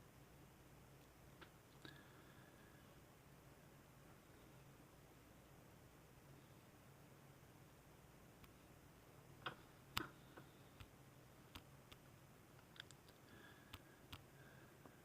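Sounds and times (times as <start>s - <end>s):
computer mouse clicks: 12.6s - 14.3s.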